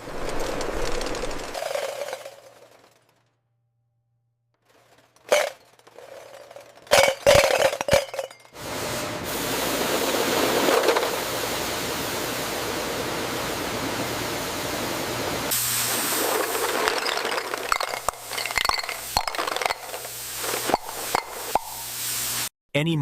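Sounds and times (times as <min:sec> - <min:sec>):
steady hissing spray: 0:09.3 - 0:16.8, 0:19.9 - 0:22.5.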